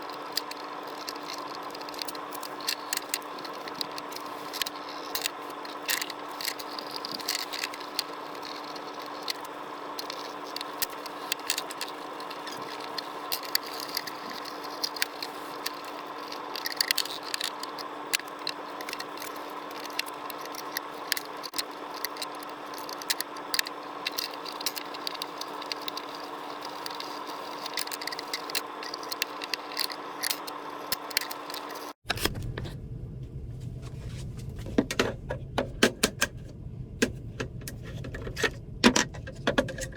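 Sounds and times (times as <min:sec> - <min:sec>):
scraping and clicking of hand work: 0:00.0 - 0:32.3, 0:37.0 - 0:39.9
steady hum: 0:00.0 - 0:39.9
low rumble: 0:32.1 - 0:39.4.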